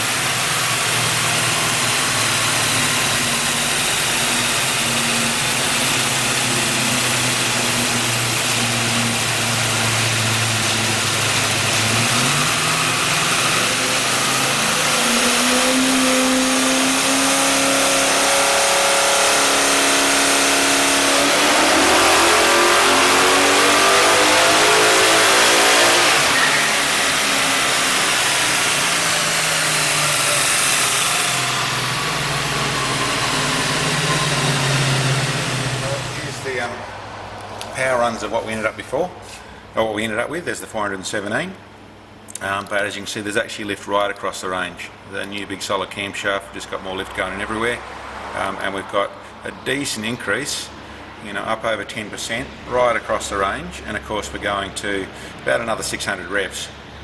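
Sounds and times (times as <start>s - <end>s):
car engine revving: 0.0s - 39.6s, 46.6s - 51.1s.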